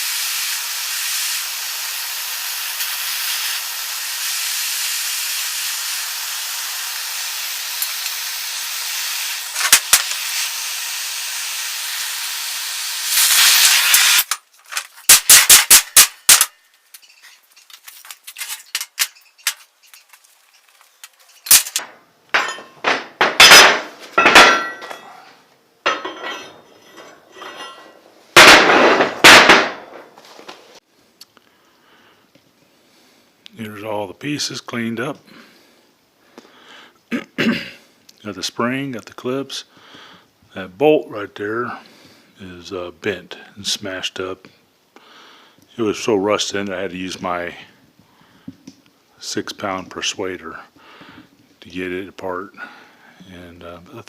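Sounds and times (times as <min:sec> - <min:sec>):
loud hiss of air: 0:00.0 - 0:14.3
metallic clanks and knocks: 0:21.1 - 0:25.2, 0:25.9 - 0:30.1.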